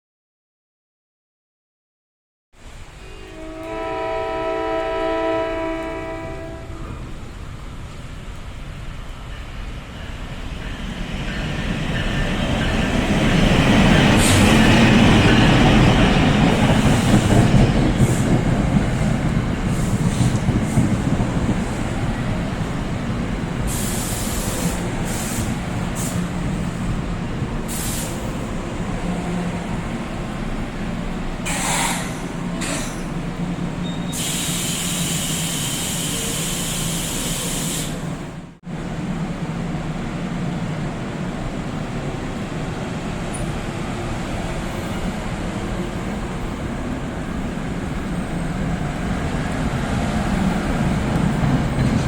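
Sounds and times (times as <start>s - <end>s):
low rumble of approaching train: 2.6s - 52.0s
train horn blast: 3.0s - 7.0s
high hiss bursts: 23.6s - 26.4s, 27.6s - 28.4s, 34.1s - 38.1s.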